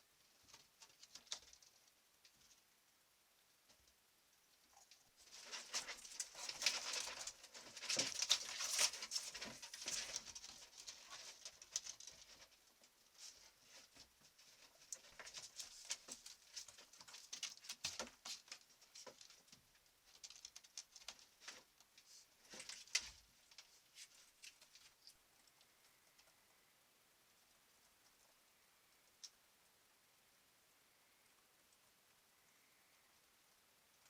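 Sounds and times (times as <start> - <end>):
rustling: 0.0 - 34.0
claws scratching: 4.8 - 19.5
animal footsteps pattering: 5.2 - 25.6.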